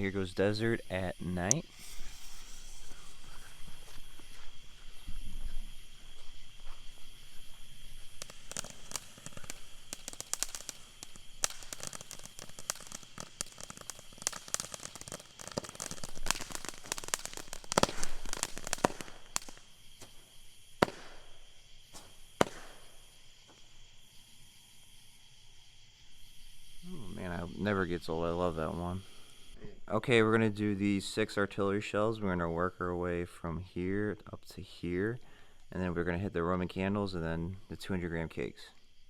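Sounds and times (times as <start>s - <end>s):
firework crackling pops: 1.4s - 4.5s, 5.7s - 24.1s.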